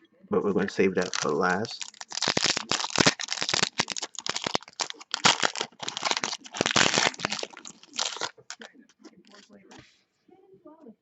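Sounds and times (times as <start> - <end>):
foil card pack crinkling: 1.0 - 8.7.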